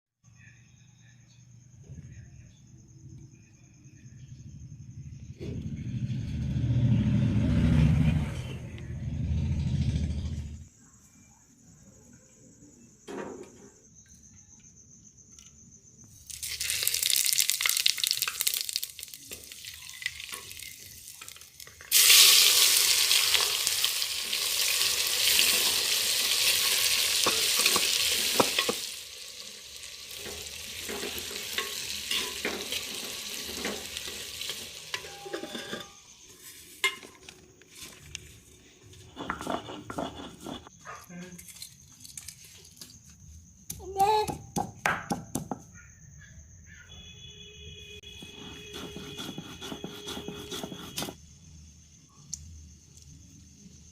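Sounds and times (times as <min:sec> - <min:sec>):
food sizzling in hot oil: 0:16.2 - 0:37.2.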